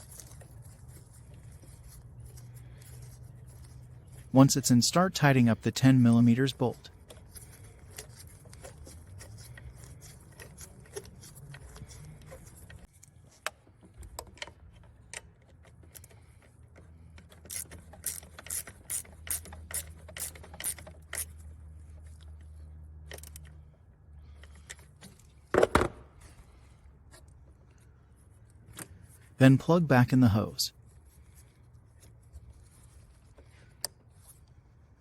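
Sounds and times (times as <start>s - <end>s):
ratchet wrench clicking: 17.2s - 21.4s.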